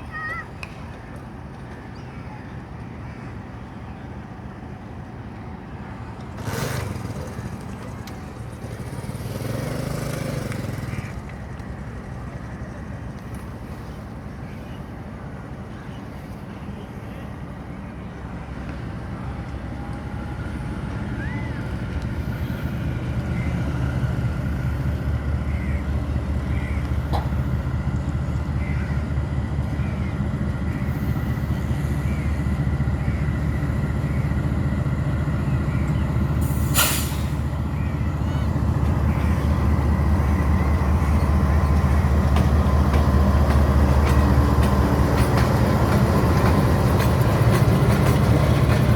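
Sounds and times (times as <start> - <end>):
diesel locomotive engine rumbling: 0.0 - 48.9.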